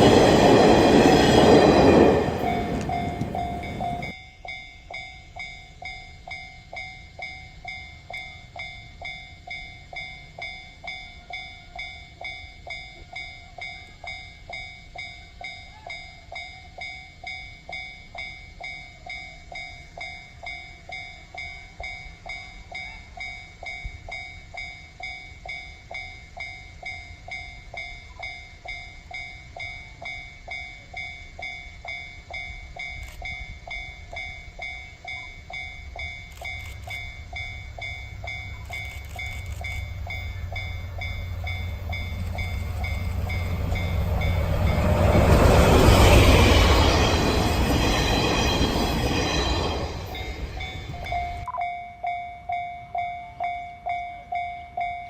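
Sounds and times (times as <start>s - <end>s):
diesel locomotive rumble: 0.0s - 4.2s, 35.8s - 51.5s
level-crossing warning bell clanging: 0.0s - 55.0s.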